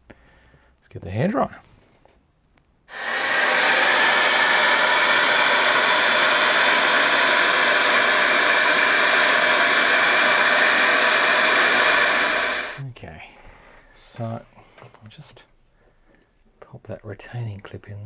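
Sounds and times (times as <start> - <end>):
hair dryer blowing air: 2.9 - 12.8.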